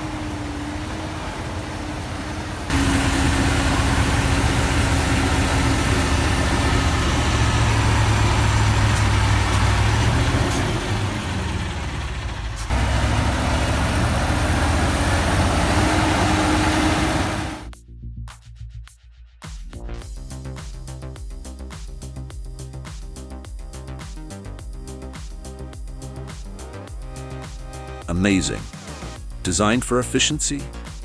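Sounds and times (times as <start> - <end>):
truck engine running under load: 0.0 - 17.7.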